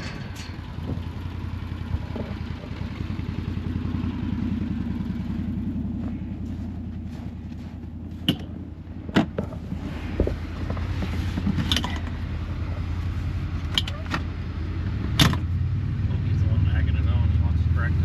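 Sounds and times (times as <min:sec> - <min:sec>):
sharp knocks and rattles: 0:00.0 - 0:03.4, 0:08.2 - 0:12.2
utility vehicle engine running: 0:00.0 - 0:18.0.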